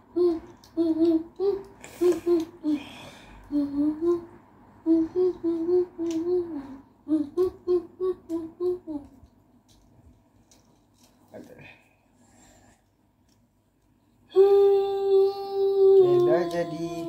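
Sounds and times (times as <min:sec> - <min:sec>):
person humming: 0:00.0 - 0:09.2, 0:14.3 - 0:17.0.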